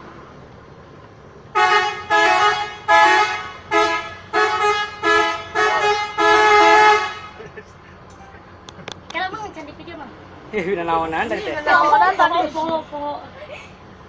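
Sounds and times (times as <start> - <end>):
multi-tone bus horn blasts: 1.5 - 7.5.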